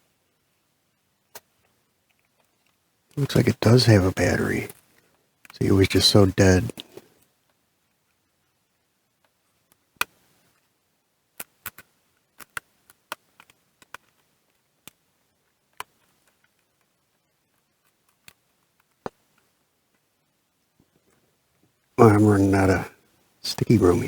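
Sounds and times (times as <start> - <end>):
small parts clicking and tapping: 1.3 - 2.8, 11.3 - 20.1.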